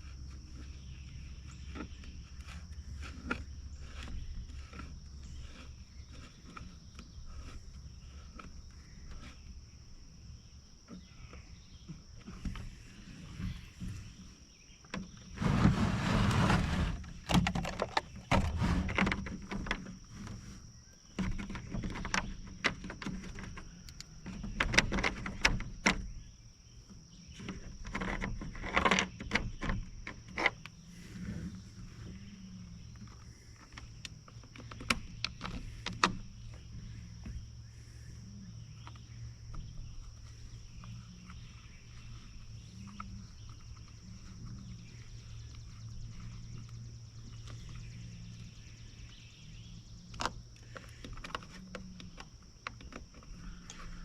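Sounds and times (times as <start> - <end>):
scraping rustle: 0.0 - 26.3, 26.9 - 54.0
plastic parts and tools clicking: 16.4 - 20.4, 50.1 - 54.0.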